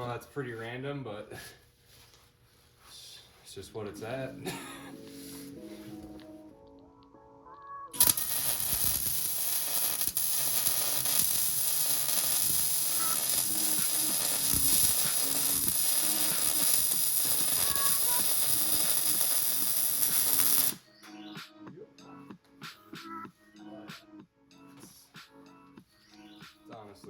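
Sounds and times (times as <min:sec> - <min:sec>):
welding arc: 0:08.0 - 0:20.8.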